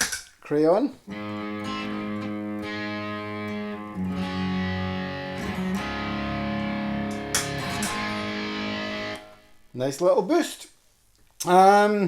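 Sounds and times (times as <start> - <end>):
electric guitar chords ringing: 1.1 - 9.7.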